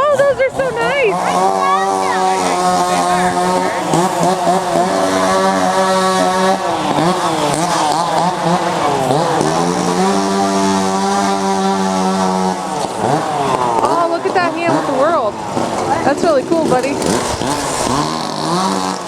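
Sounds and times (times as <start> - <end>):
chainsaw revving: 0.0 - 19.0.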